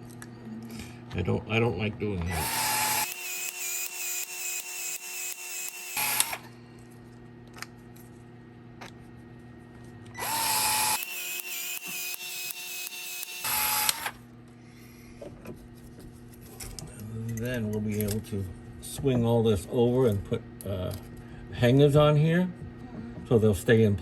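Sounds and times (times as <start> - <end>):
steady low hum: 0.0 - 3.0, 5.9 - 11.4, 12.3 - 24.0
power tool motor whining: 2.3 - 6.5, 10.1 - 14.2.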